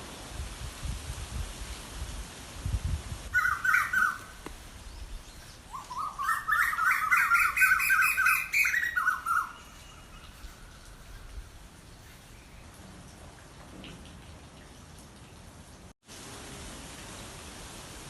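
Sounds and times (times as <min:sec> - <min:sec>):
steady hiss: 0:00.0 - 0:06.3, 0:16.0 - 0:18.0
bird calling descending notes: 0:03.4 - 0:11.0.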